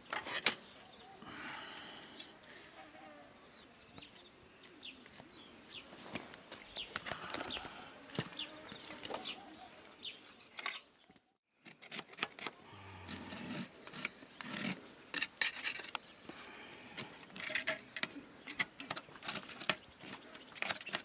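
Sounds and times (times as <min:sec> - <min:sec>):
rasping and scraping wood: 0:11.7 - 0:16.0.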